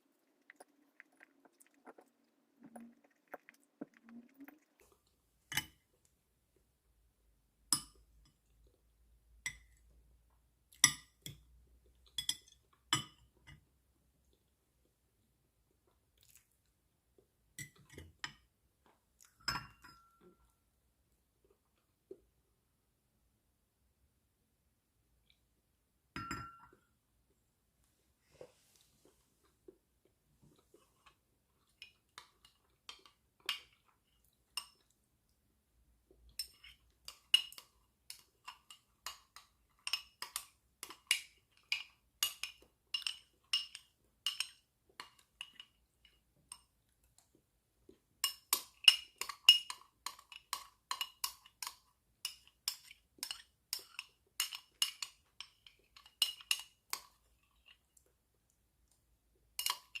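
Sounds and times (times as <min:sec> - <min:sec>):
utensil tapping glass dish: 0:26.2 - 0:26.8.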